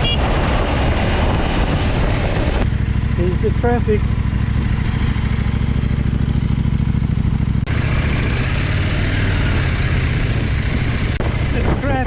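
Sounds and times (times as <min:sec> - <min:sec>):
wind noise: 0:00.0 - 0:02.8, 0:07.7 - 0:12.0
motorcycle engine running: 0:00.0 - 0:12.0.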